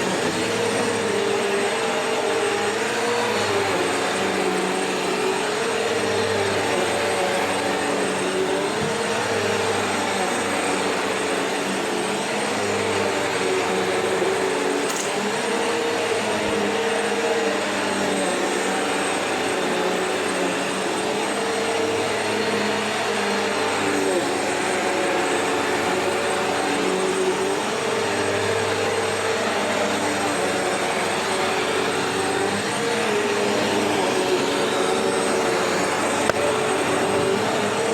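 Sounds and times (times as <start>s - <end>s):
vacuum cleaner running: 0.0s - 37.9s.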